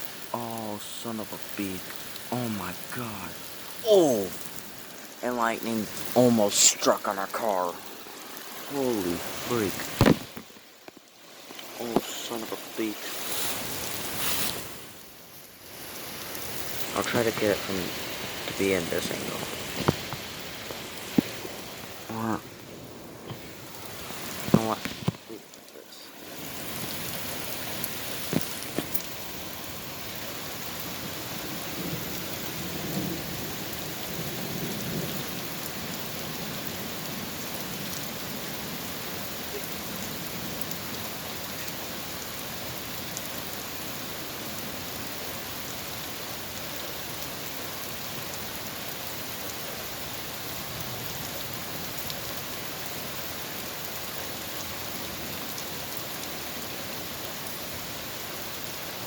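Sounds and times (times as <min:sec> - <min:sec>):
heavy rain: 0:00.0 - 0:59.0
sharp knocks: 0:10.0 - 0:10.4.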